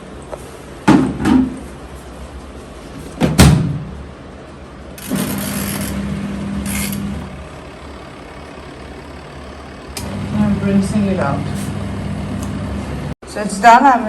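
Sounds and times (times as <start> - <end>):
washing machine motor humming: 5.0 - 13.2.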